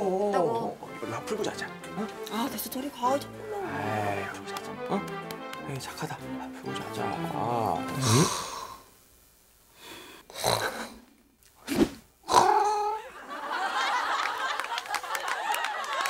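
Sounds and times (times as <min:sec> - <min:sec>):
person snorting: 0:07.6 - 0:08.9, 0:09.8 - 0:13.0.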